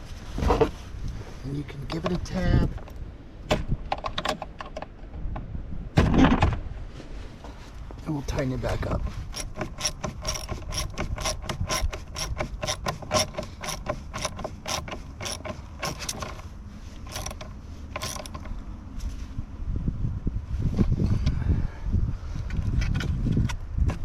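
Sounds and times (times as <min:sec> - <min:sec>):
socket ratchet clicking: 0:09.3 - 0:16.4, 0:17.1 - 0:18.5.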